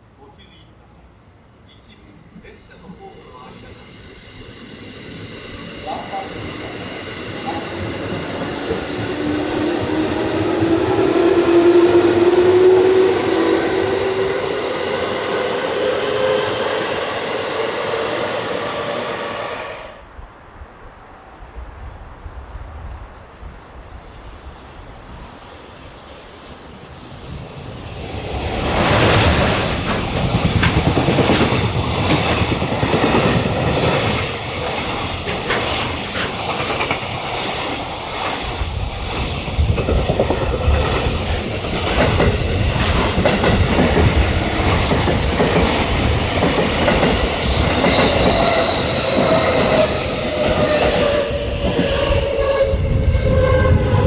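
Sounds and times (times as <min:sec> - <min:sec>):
train rumble: 0:00.0 - 0:54.0
wheels clicking over rail joints: 0:28.5 - 0:38.6
wheel squeals: 0:46.5 - 0:54.0.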